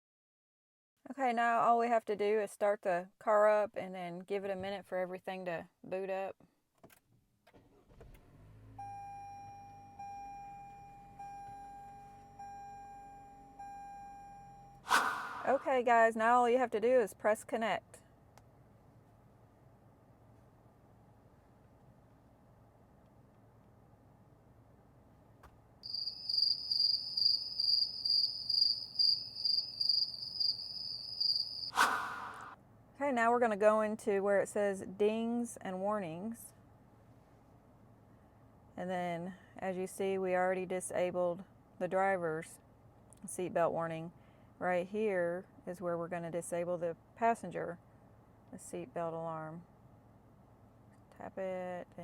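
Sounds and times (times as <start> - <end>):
dashboard warning chime: 8.8 - 14.8.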